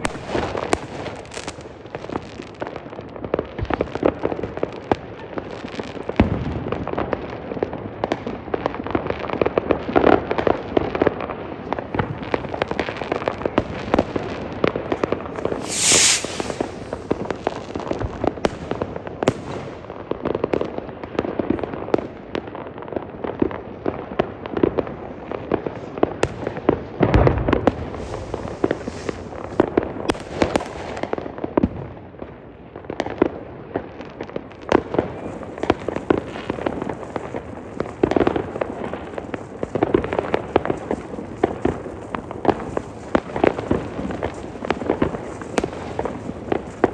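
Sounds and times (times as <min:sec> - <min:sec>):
fireworks bangs and crackles: 0:00.0 - 0:46.9
loud hiss: 0:15.5 - 0:17.2.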